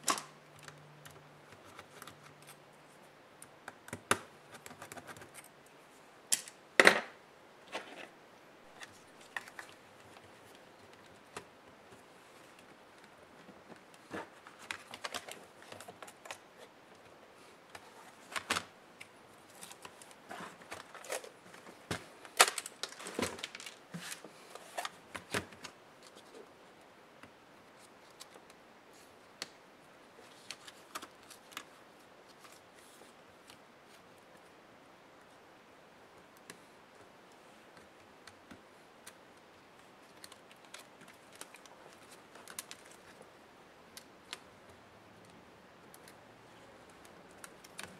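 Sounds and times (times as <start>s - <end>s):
laptop parts and tools clicking: 0.0s - 2.6s, 3.4s - 5.5s.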